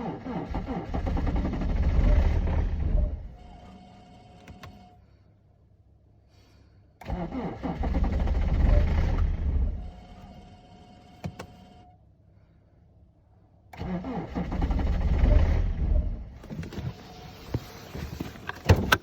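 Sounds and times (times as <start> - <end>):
car engine starting and stalling: 0.0 - 3.6, 7.0 - 10.5, 13.7 - 19.0.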